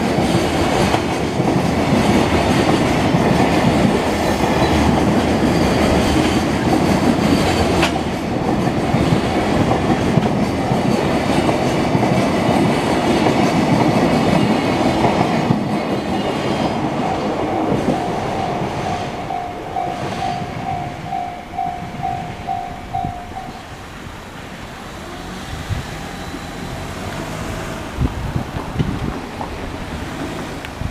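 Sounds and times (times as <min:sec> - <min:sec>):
train passing: 0:00.0 - 0:30.9
crossing warning bell dinging: 0:13.3 - 0:24.6.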